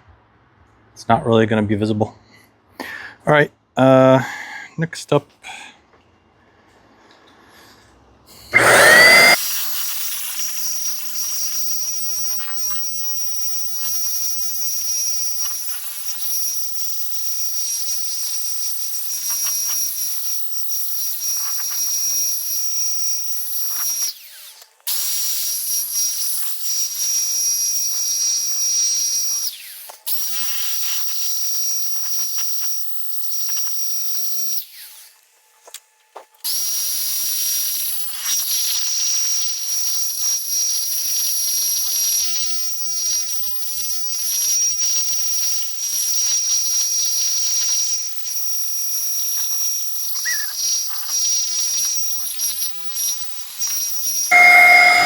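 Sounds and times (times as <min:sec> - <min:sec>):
paint sprayer motor whine: 0:08.6 - 0:09.4, 0:54.3 - 0:55.0.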